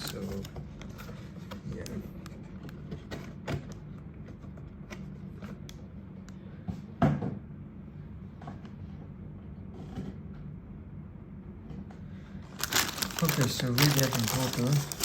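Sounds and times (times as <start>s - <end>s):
cardboard box clicks and rustles: 12.6s - 15.0s.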